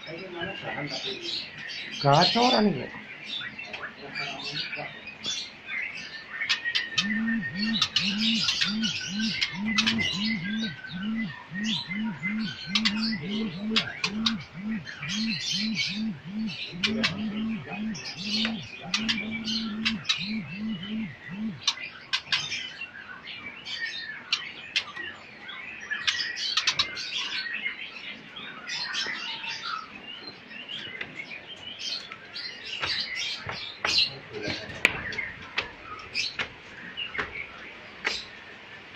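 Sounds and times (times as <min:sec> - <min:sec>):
songbirds chirping: 0:00.0 - 0:38.9
low cooing: 0:07.0 - 0:21.7.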